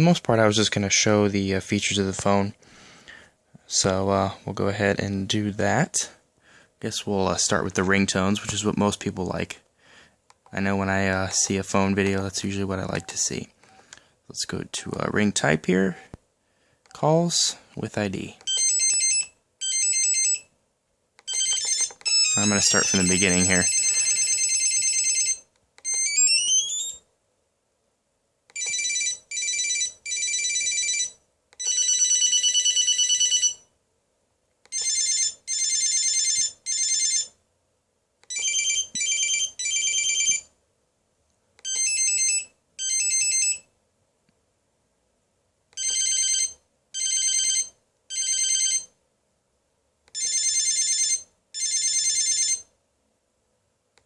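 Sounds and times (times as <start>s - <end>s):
high-pitched electronic ringtone beeps: 21.3s - 27.0s.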